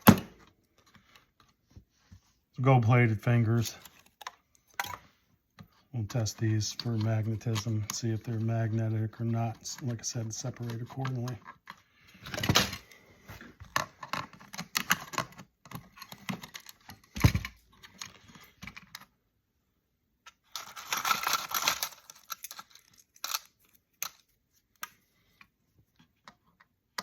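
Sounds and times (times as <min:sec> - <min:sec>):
electronic parts clattering: 0:20.3 - 0:24.4.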